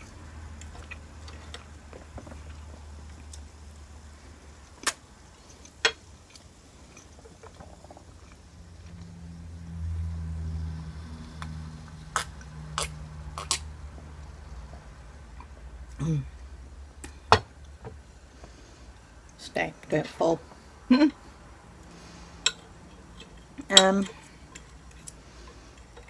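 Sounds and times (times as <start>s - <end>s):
low drone: 8.4s - 15.2s.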